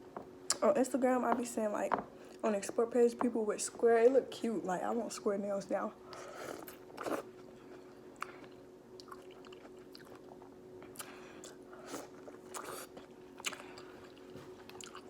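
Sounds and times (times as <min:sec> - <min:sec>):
faint steady hum: 0:00.0 - 0:15.0
chewing and mouth smacks: 0:08.2 - 0:15.0.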